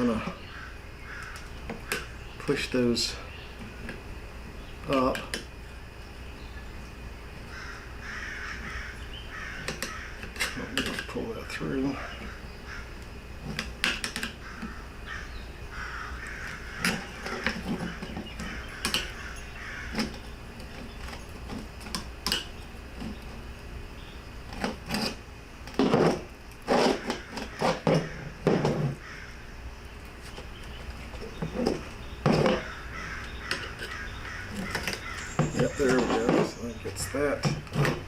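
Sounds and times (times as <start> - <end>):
screwdriver scraping metal frame: 24.5 - 25.2, 25.8 - 29.0
rubber squawking: 25.8 - 29.3.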